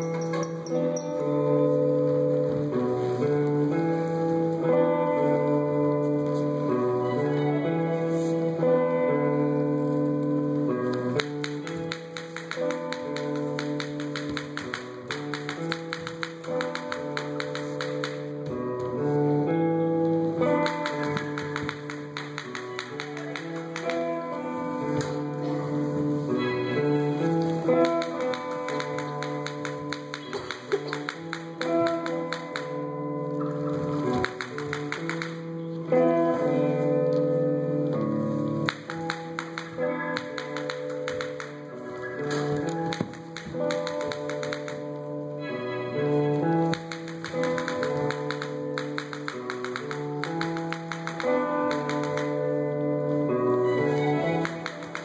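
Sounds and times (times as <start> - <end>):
plucked-string music: 0.0 - 55.0
quick runs of sharp clicks: 11.0 - 18.3, 20.4 - 24.1, 27.4 - 32.8, 33.7 - 35.6, 38.6 - 45.0, 46.3 - 52.6, 53.8 - 55.0
rapid sharp clicks: 46.6 - 52.4.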